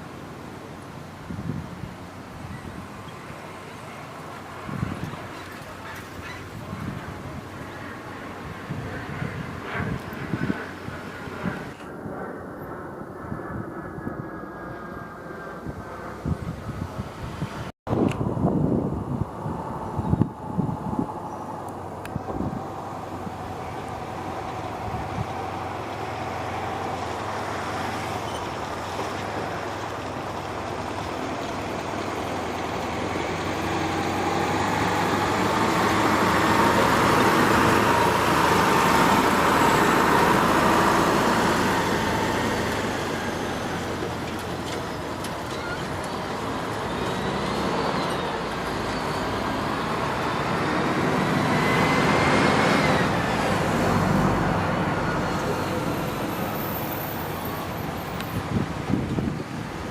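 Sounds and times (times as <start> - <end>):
jet engine roar and whine: 0.0 - 59.9
high whining tones: 17.9 - 43.4.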